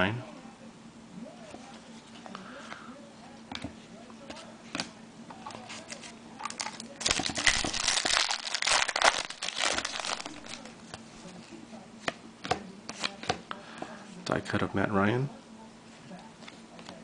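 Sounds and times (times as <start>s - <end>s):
wrapper crinkling and tearing: 5.7s - 10.7s.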